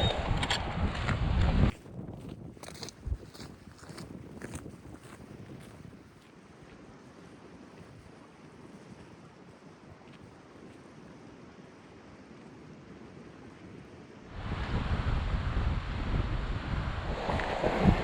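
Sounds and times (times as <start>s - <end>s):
wind blowing: 0.0s - 6.1s, 14.3s - 18.0s
wind buffeting microphone: 0.0s - 6.2s, 14.3s - 18.0s.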